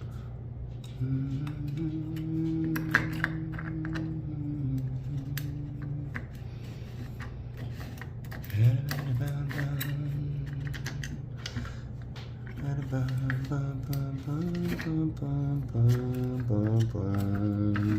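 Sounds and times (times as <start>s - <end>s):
man humming: 0.8s - 6.3s, 12.5s - 17.9s
plastic parts clicking: 5.0s - 17.9s.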